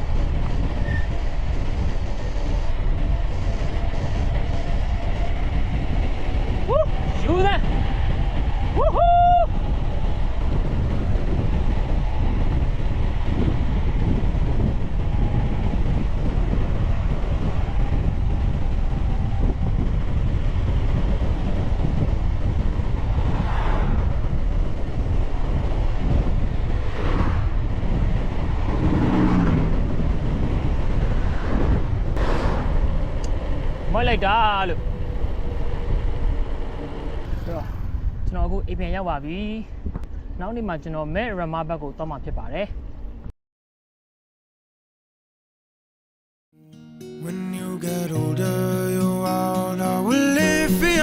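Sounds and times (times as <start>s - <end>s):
wind buffeting microphone: 0.0s - 43.3s.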